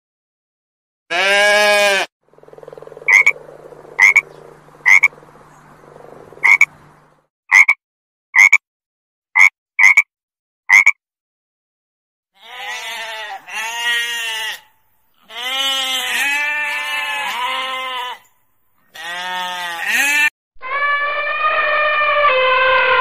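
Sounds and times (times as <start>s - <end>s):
single bleat: 1.1s - 2.1s, 12.4s - 18.3s, 18.9s - 21.3s
frog croaking: 2.3s - 6.8s, 7.5s - 7.8s, 8.4s - 8.6s, 9.4s - 10.1s, 10.7s - 11.0s.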